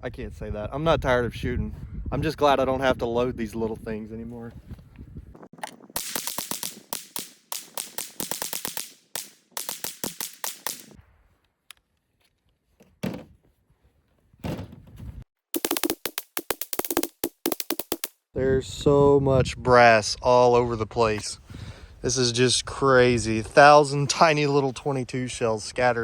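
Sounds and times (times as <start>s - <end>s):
rifle fired rapidly: 6.0s - 11.0s.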